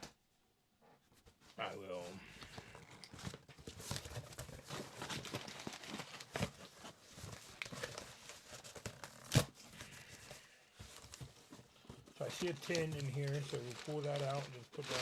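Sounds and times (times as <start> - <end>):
packing material rustling: 2.6 - 15.0.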